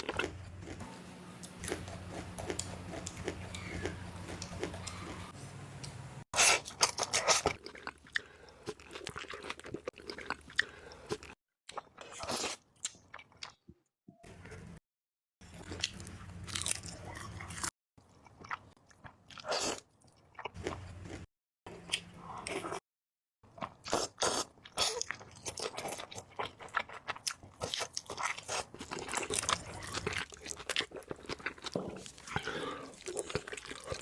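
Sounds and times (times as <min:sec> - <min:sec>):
wet chewing with crunchy bites: 0:00.0 - 0:05.4, 0:23.6 - 0:34.0.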